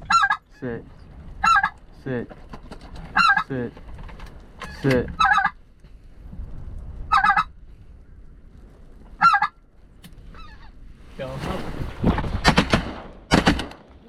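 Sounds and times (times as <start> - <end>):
goose yelping honks: 0.0 - 0.4, 3.1 - 3.5, 5.2 - 5.6, 9.2 - 9.5.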